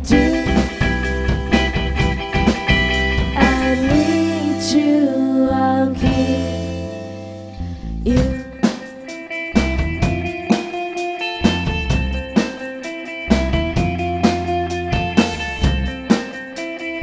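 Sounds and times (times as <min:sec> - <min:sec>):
live band music: 0:00.0 - 0:17.0.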